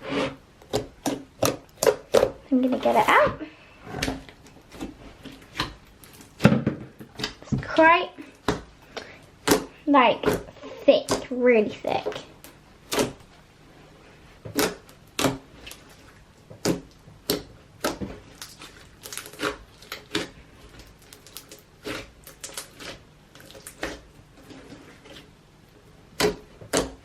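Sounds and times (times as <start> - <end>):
slime squished by hand: 14.5 - 24.1.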